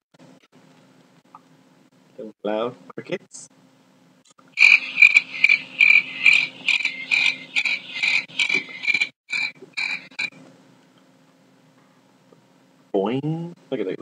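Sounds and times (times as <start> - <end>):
crickets chirping: 4.6 - 10.3.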